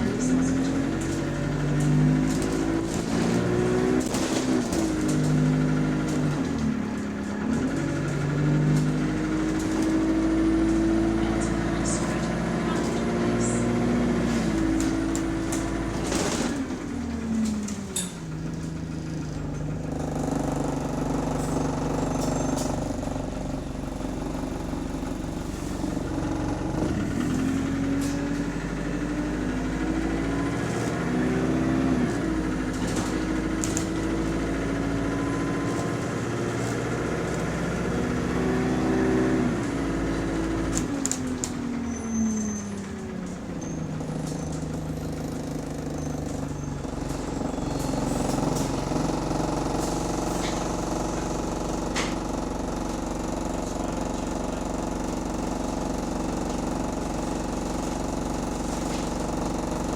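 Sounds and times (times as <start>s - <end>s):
bus body rattle: 0.0s - 59.9s
bus diesel engine accelerating: 0.0s - 59.9s.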